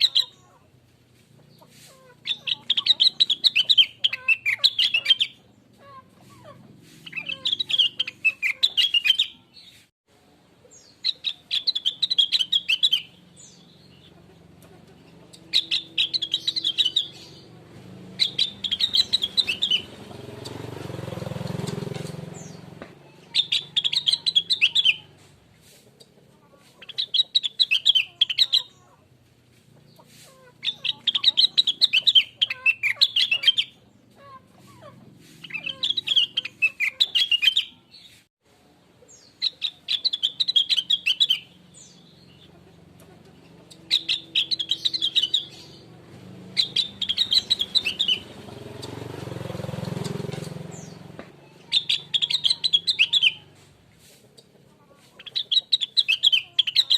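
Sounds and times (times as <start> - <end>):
songbird chattering song: 0.0 - 9.8, 10.5 - 38.2, 38.9 - 56.9.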